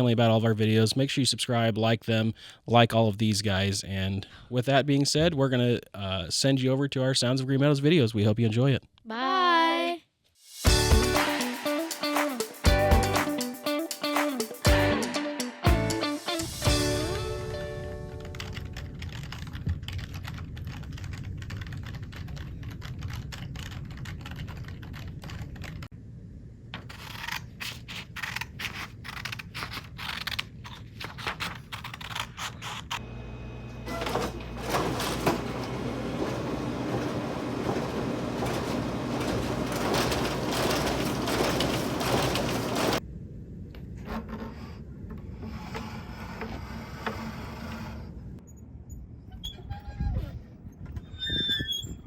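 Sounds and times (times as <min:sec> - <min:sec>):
computer keyboard typing: 0:18.2 - 0:25.8.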